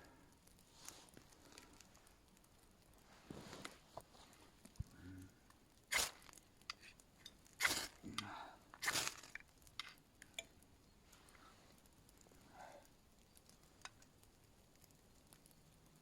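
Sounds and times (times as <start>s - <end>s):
light clicks and crackles: 0.0s - 16.0s
sticks of wood cracking: 0.5s - 10.5s.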